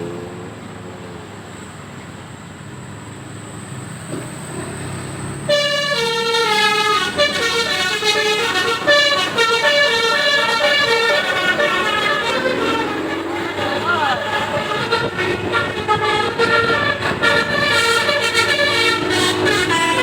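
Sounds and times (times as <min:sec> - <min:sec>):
bus engine running: 0:00.0 - 0:20.0
multi-note musical horn: 0:05.5 - 0:20.0.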